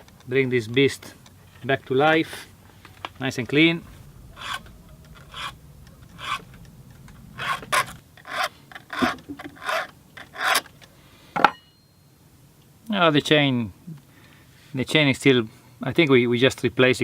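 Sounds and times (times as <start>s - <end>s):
hand scraping chainsaw body: 4.1s - 10.8s.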